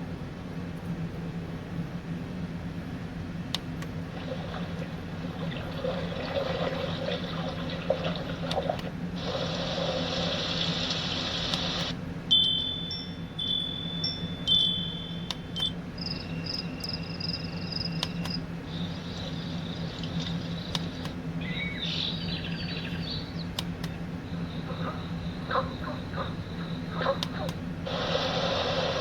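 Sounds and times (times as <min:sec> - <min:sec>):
steady low hum: 0:00.0 - 0:29.0
birdsong from small speaker: 0:10.0 - 0:27.9.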